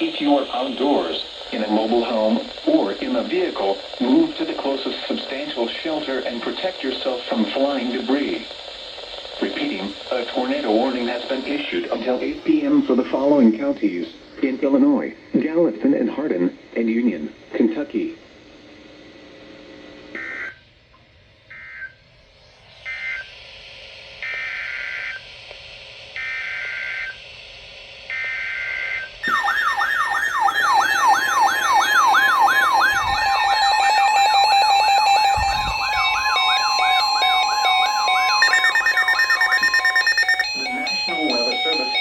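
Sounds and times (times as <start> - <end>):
steady alarm tone: 28.1 - 42.0
wavering siren-like alarm tone: 28.2 - 42.0
layered beeps: 29.2 - 42.0
screeching digital data bursts: 29.2 - 42.0.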